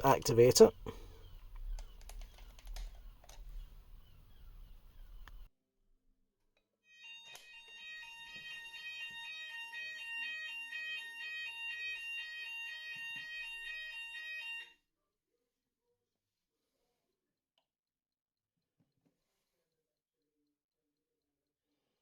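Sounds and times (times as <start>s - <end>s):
electronic fire alarm tones pulsing: 7.0s - 14.7s.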